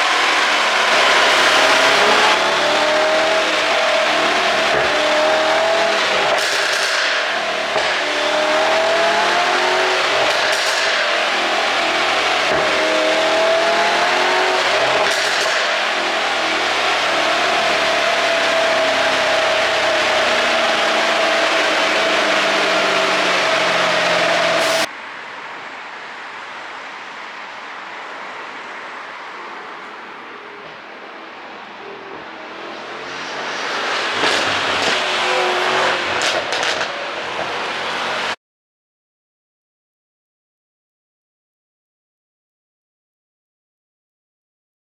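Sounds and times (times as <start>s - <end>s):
exhaust crackles: 0.0s - 38.3s
car engine accelerating: 0.0s - 38.4s
exhaust pops and crackles: 36.2s - 37.0s.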